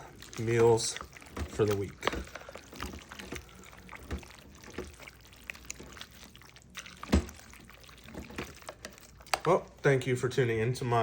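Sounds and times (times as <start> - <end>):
spoon stirring wet food: 0.0 - 11.0.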